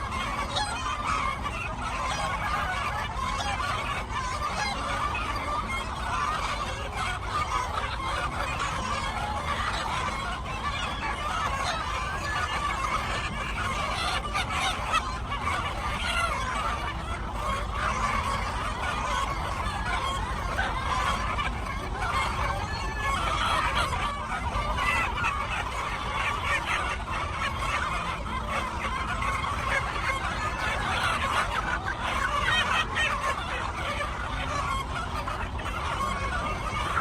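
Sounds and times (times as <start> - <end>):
chickens clucking: 0.0 - 37.0.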